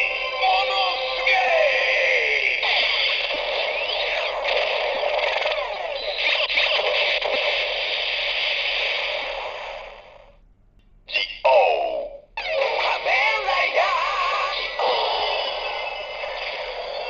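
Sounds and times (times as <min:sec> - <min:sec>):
toy electronic sound effect: 0:00.0 - 0:08.0, 0:12.4 - 0:17.0.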